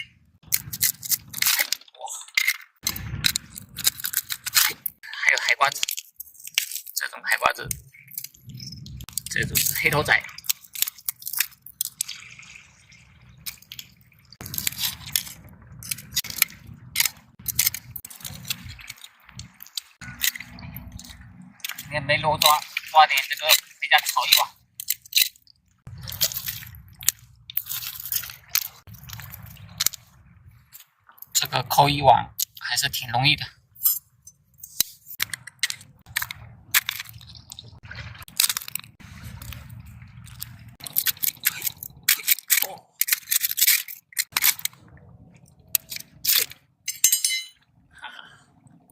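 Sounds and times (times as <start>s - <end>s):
crunching of shells and gravel: 0.0s - 12.5s, 13.1s - 21.9s, 23.4s - 31.4s, 34.7s - 46.8s
low handling rumble: 2.8s - 4.0s, 14.4s - 22.2s, 35.8s - 40.8s.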